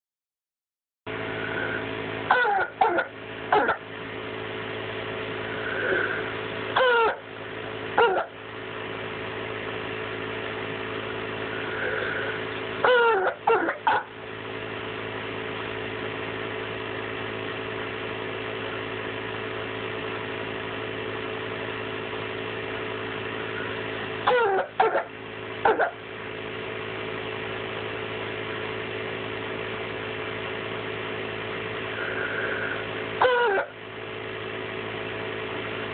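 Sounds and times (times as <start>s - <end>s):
steady low hum: 1.1s - 35.9s
child coughing: 2.3s - 3.8s, 6.8s - 7.2s, 8.0s - 8.3s, 12.8s - 13.8s, 24.3s - 25.1s, 33.2s - 33.6s.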